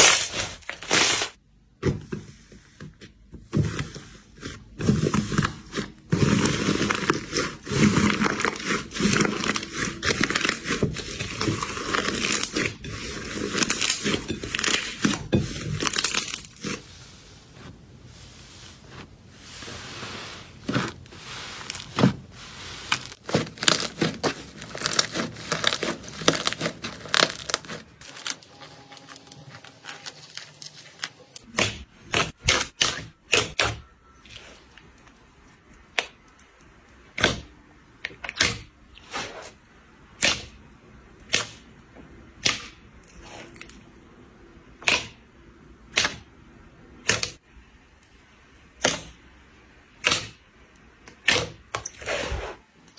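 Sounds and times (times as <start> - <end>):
slime crackling: 6.3 - 31.4.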